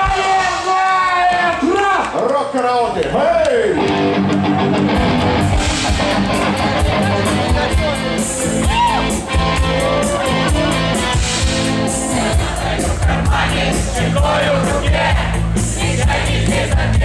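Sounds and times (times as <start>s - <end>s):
electric guitar chords: 3.7s - 15.8s
drum kit steady beat: 4.4s - 17.0s.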